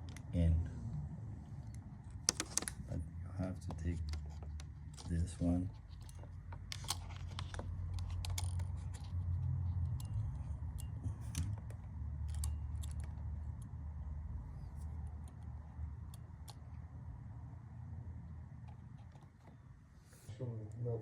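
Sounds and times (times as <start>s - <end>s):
steady low hum: 0.0s - 21.0s
plastic parts and screws rattling: 2.2s - 2.8s, 3.6s - 10.2s.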